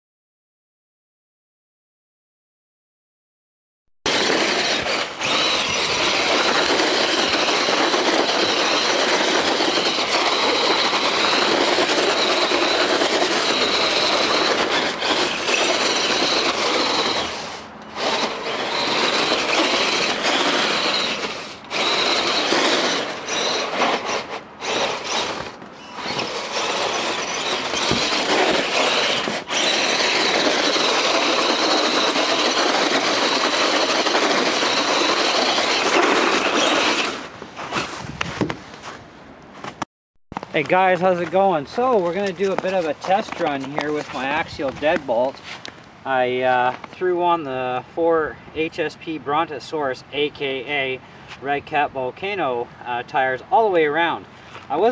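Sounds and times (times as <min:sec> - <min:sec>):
electric motor whining: 0:04.1 - 0:37.4.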